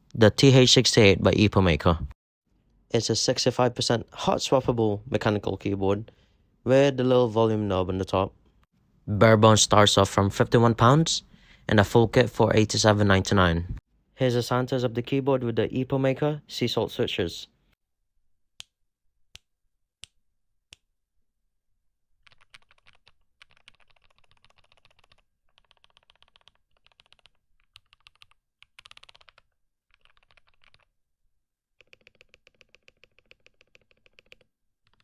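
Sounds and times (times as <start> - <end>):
mechanical keyboard typing: 22.3 - 30.9, 31.8 - 35.0.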